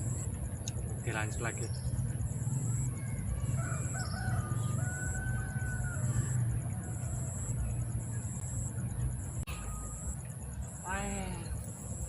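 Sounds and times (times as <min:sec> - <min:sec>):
steady low hum: 0:00.0 - 0:12.0
rooster crowing: 0:03.4 - 0:07.7.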